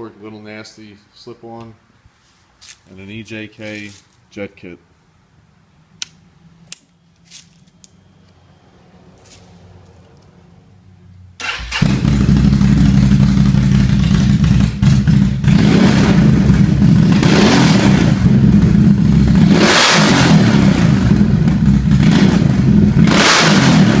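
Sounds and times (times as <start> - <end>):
atv engine starting and revving: 11.4 - 24.0.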